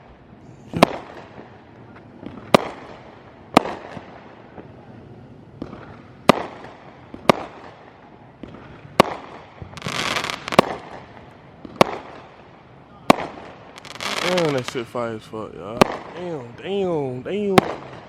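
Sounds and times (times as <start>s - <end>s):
firework rushing burst: 0.0s - 1.6s, 8.4s - 12.3s, 13.1s - 18.0s
fireworks bangs: 0.0s - 18.0s.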